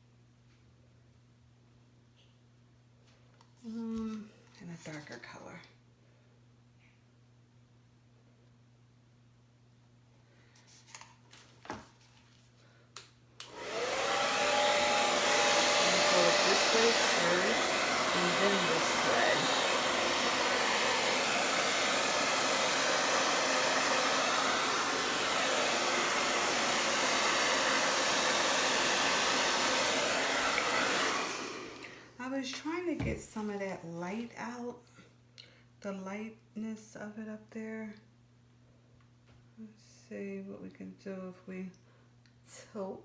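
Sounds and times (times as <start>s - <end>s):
hair dryer running: 13.4s - 33.2s.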